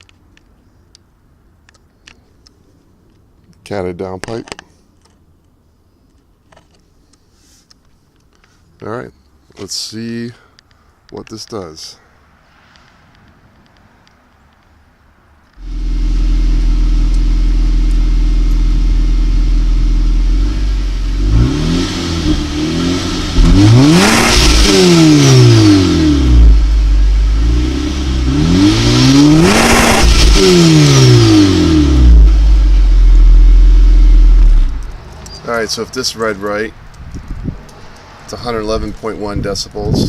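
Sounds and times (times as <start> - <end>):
car engine idling and revving: 15.6 - 35.4.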